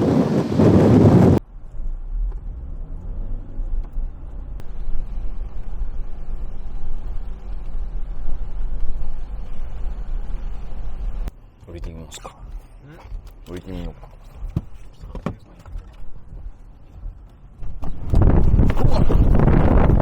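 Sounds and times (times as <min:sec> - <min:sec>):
wind blasting across microphone: 0:00.0 - 0:01.4, 0:16.0 - 0:20.0
low rumble inside car: 0:00.7 - 0:20.0.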